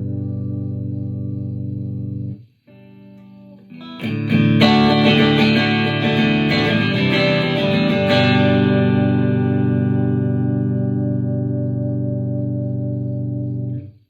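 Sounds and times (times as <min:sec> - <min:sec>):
electric guitar chords: 0:00.0 - 0:14.0.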